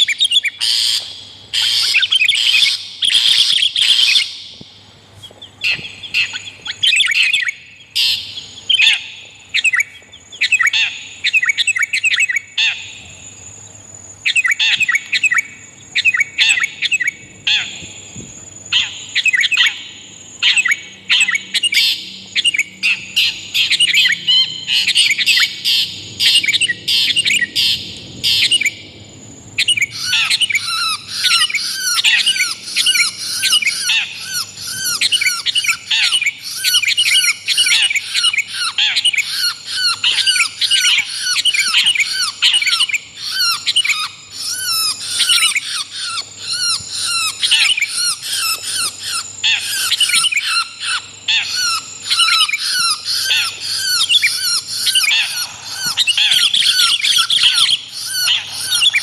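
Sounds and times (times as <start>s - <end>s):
birds chirping harshly: 0.0s - 4.6s, 29.6s - 59.0s.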